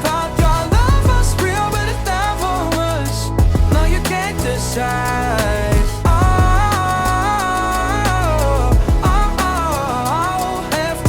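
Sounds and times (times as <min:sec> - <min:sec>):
pop song bass and drum beat: 0:00.0 - 0:11.0.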